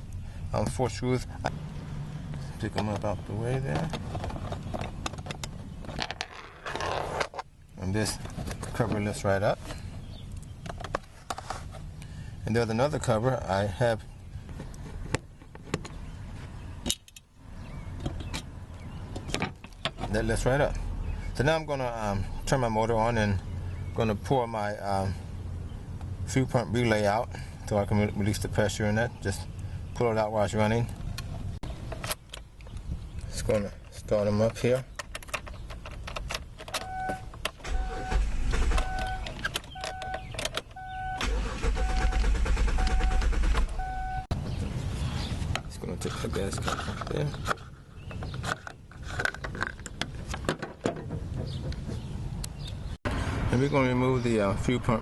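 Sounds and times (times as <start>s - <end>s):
car engine starting and running: 35.5s - 45.3s
warning chime beeping: 43.8s - 44.3s.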